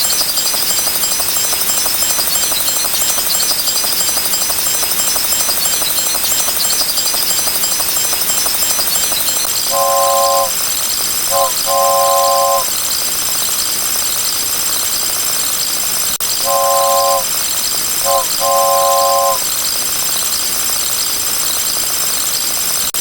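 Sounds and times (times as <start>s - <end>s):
toy train horn toots: 9.6s - 10.7s, 11.3s - 12.8s, 16.4s - 17.4s, 18.0s - 19.5s.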